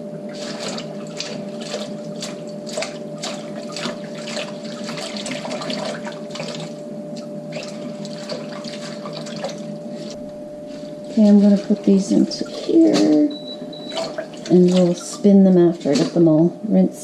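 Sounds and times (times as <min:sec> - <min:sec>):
kitchen tap running: 0:00.0 - 0:10.2, 0:11.2 - 0:16.6
steady hum: 0:00.0 - 0:17.0
water splashing on leaves: 0:00.3 - 0:06.8.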